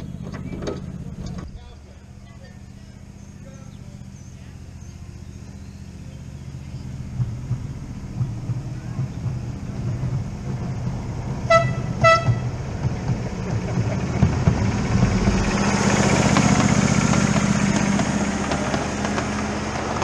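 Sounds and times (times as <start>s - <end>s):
locomotive running noise: 0.0s - 20.0s
steam locomotive whistle toots: 11.5s - 12.6s.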